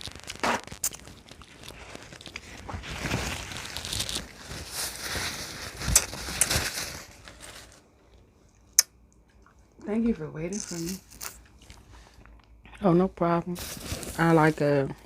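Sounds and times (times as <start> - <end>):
food packaging crinkling: 0.0 - 8.2.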